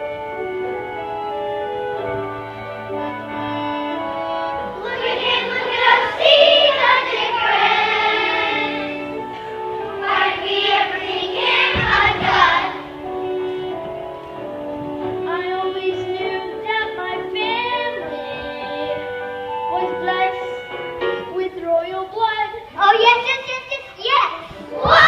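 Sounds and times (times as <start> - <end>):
held instrumental notes: 0.0 - 25.0
children singing: 4.6 - 13.0, 24.6 - 25.0
low thump: 11.7 - 12.5.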